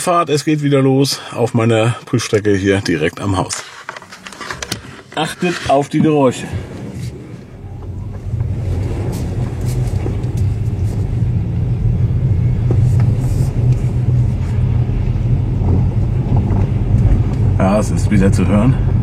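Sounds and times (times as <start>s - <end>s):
car road rumble: 2.8s - 19.0s
suspension knocks: 4.5s - 17.7s.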